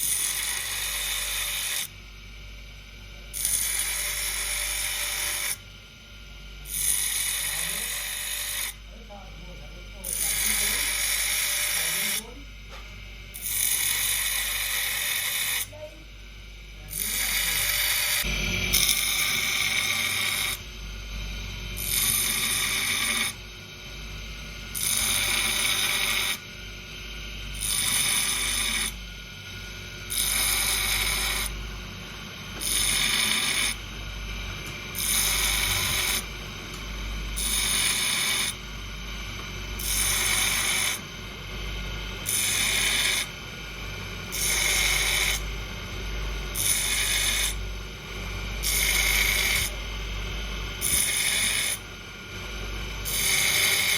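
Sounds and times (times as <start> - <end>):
grinder grinding steel: 6.7 - 8.8, 10.0 - 12.4, 16.8 - 20.7, 21.8 - 23.4, 24.6 - 26.4, 27.5 - 29.0, 30.1 - 31.6, 32.5 - 33.9, 34.6 - 36.4, 37.4 - 38.6, 39.8 - 41.1, 42.2 - 43.4, 44.3 - 45.5, 46.4 - 47.6, 48.5 - 49.8, 50.8 - 51.9, 53.0 - 53.9.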